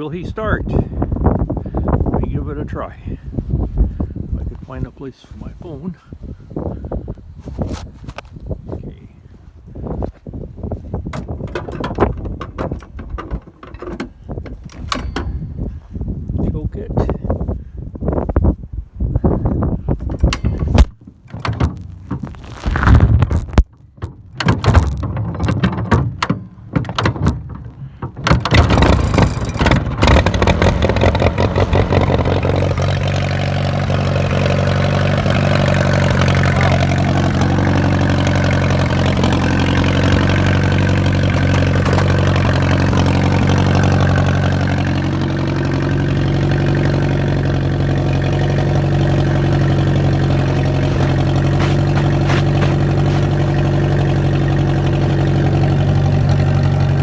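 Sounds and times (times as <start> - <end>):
tractor engine starting and idling: 11.0 - 15.8, 20.1 - 22.4, 24.6 - 57.0.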